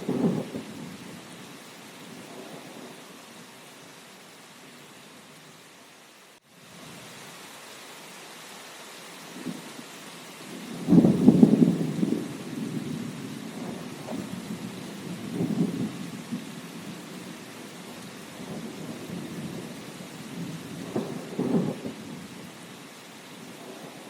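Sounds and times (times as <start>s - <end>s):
thunder rumbling: 0.0s - 1.5s, 10.5s - 22.6s
steady rain hiss: 0.0s - 24.0s.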